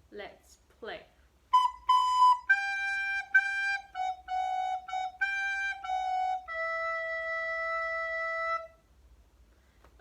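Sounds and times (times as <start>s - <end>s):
descant recorder playing: 1.5s - 8.8s.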